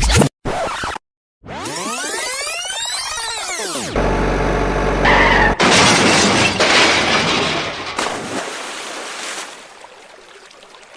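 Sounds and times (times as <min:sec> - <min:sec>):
loud crashing and shattering: 0:05.4 - 0:08.5.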